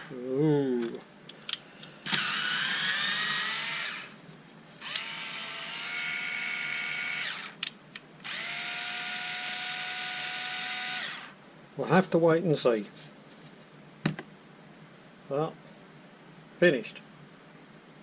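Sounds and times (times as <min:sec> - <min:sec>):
cordless screwdriver whirring: 0:02.1 - 0:04.2, 0:04.8 - 0:07.6, 0:08.2 - 0:11.4.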